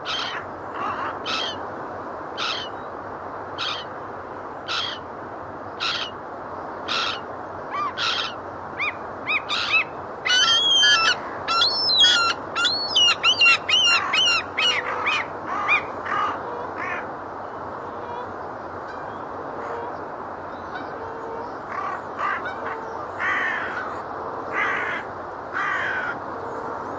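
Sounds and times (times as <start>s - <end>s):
gulls calling: 6.9s - 17.0s.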